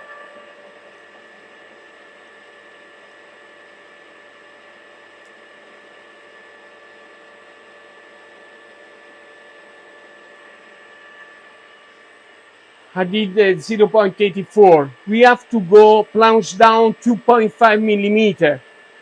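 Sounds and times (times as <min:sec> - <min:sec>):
milling machine running: 0:12.6 - 0:19.0.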